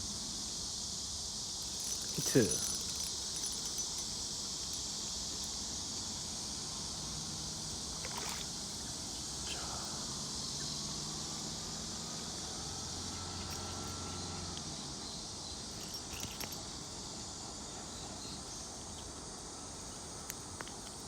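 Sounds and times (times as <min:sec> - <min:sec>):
insects chirping: 0:00.0 - 0:21.0.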